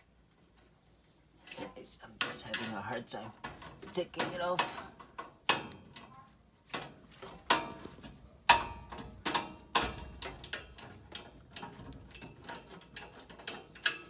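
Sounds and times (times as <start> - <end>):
hand tool clicking on metal: 6.8 - 14.0.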